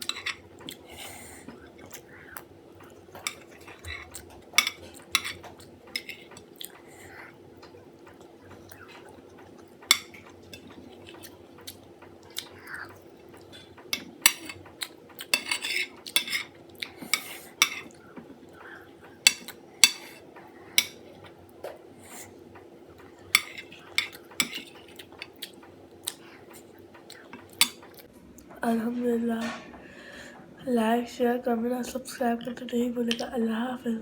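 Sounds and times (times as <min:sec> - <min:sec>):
faint steady hum: 0:00.0 - 0:34.0
cutlery clinking on plate: 0:13.4 - 0:17.9, 0:23.3 - 0:25.4.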